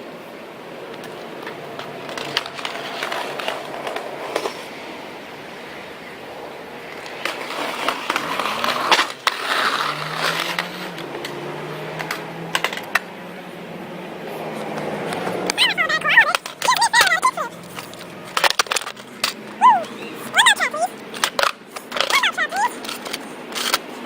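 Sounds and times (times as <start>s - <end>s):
skateboard wheels rolling on pavement: 0.0s - 24.0s
skateboard popping and landing: 7.0s - 11.4s, 14.6s - 24.0s.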